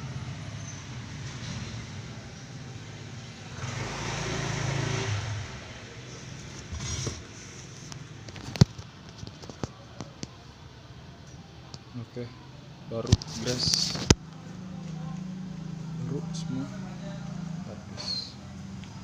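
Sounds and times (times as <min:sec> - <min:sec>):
vehicle engine running: 0:00.0 - 0:08.6, 0:12.8 - 0:19.0.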